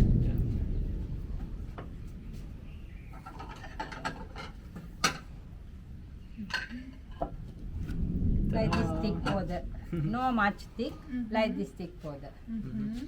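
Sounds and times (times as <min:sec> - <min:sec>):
low steady rumble: 0:00.0 - 0:13.0.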